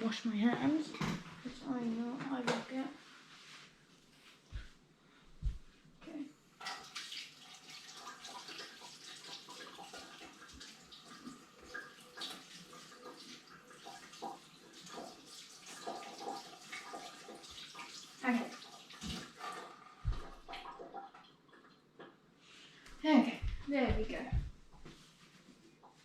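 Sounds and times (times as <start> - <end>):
water running from a tap: 6.6 - 21.9, 23.1 - 25.0
water splashing into a sink: 6.6 - 22.2
knocks: 23.4 - 24.9.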